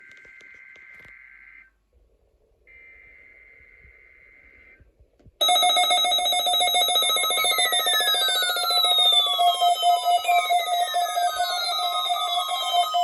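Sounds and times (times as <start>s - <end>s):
buzzing alert tone: 5.4s - 13.0s
rasping digital data bursts: 5.4s - 13.0s.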